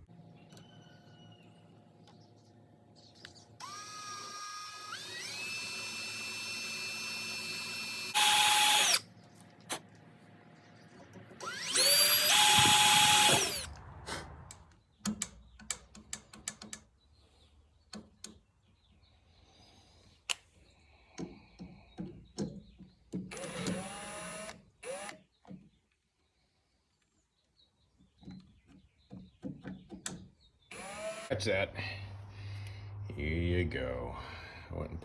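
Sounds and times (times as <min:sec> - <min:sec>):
power drill whining: 0:03.6 - 0:09.1, 0:11.4 - 0:13.7, 0:23.3 - 0:25.2, 0:30.7 - 0:31.3
small clicks and knocks: 0:15.0 - 0:16.9.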